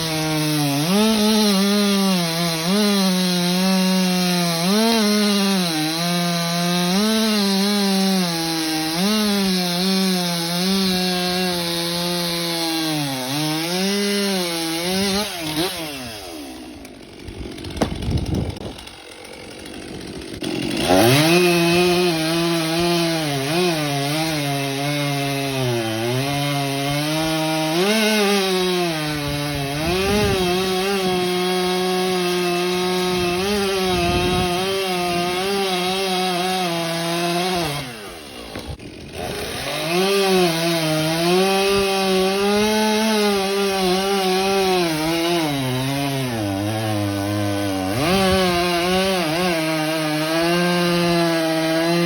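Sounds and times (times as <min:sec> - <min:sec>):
chainsaw cutting wood: 0:00.0 - 0:52.0
chainsaw knocks: 0:17.0 - 0:20.0, 0:38.4 - 0:39.0.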